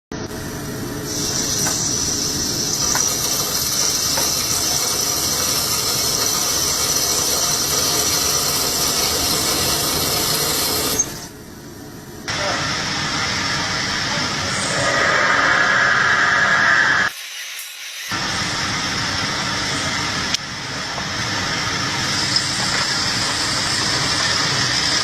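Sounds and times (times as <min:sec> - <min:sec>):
machine tool cutting with hissing whir: 0:14.1 - 0:25.0.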